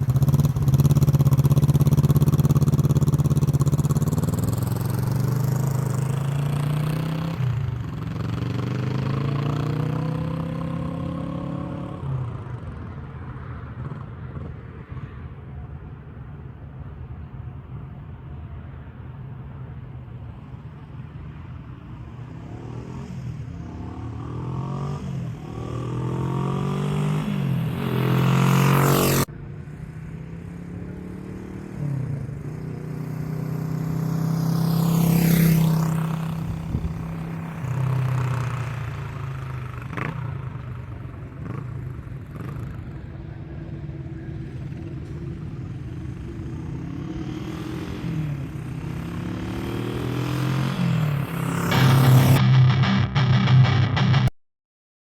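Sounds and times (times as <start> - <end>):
motorcycle engine revving: 0.0 - 12.6, 22.3 - 29.3, 30.4 - 43.1, 46.0 - 54.3.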